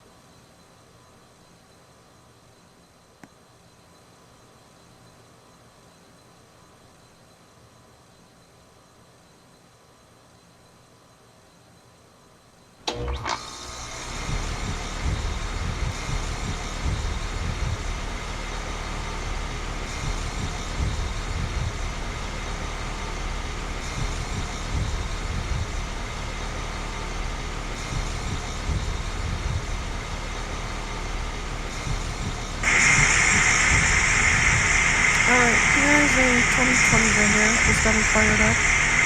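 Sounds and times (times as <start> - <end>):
air conditioner compressor humming: 13.6 - 39.0.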